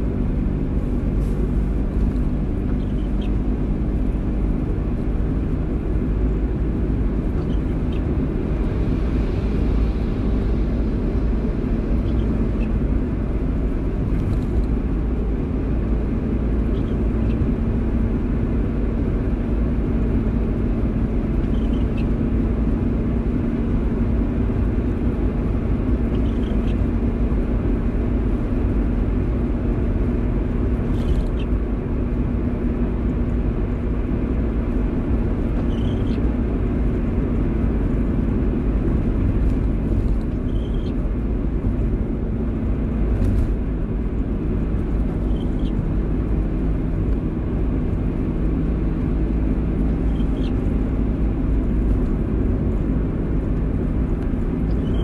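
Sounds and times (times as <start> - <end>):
faint short squeak: 2.7 - 3.3, 21.4 - 22.1, 35.6 - 36.2, 40.3 - 41.0, 45.2 - 45.8, 54.7 - 55.0.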